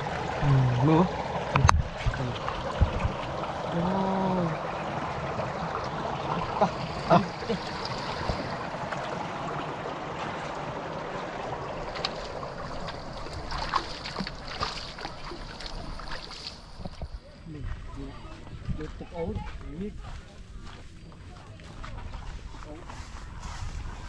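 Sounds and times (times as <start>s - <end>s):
water flowing over stones: 0.0s - 17.2s
short splashes and knocks: 1.4s - 3.8s, 5.2s - 17.2s.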